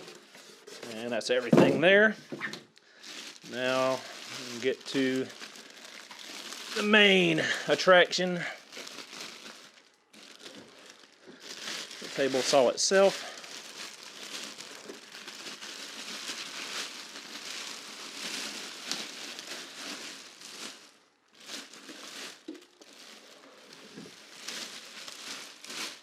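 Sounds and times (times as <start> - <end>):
plastic packaging crinkling: 2.4 - 26.0.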